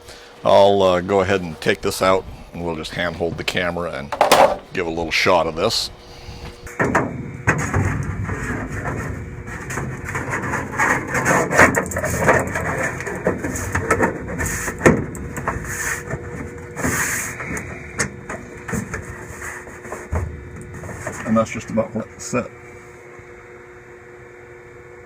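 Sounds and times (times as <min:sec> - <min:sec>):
knocks and clatter of metal cover: 0:04.1 - 0:04.7.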